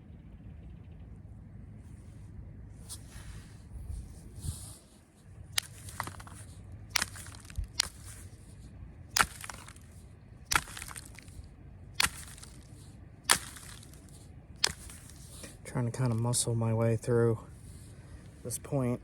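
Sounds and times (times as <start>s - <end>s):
stone knapping clicks: 5.6s - 8.3s, 9.1s - 16.3s.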